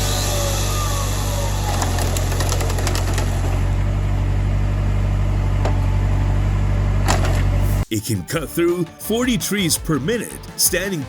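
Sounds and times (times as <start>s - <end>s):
heavy machine engine humming: 0.0s - 7.9s.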